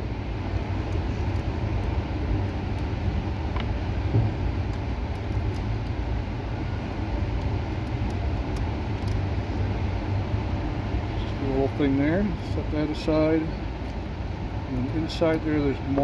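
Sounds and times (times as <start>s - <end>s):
low rumbling background noise: 0.0s - 16.0s
faint clicks of small parts: 0.6s - 3.8s, 4.6s - 6.0s, 7.3s - 9.3s, 14.8s - 16.0s.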